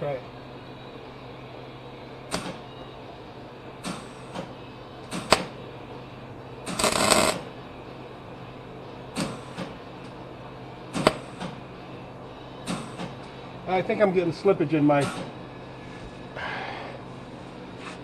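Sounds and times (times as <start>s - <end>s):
welder arc crackles: 6.7s - 7.4s
sputtering welding arc: 6.7s - 7.5s.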